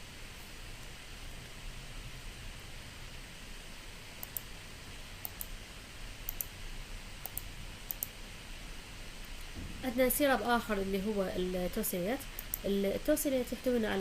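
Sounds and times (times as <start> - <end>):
faint room hiss: 0.0 - 14.0
computer clicking: 4.2 - 4.5, 5.2 - 5.6, 6.2 - 6.5, 7.2 - 8.2, 12.4 - 12.8.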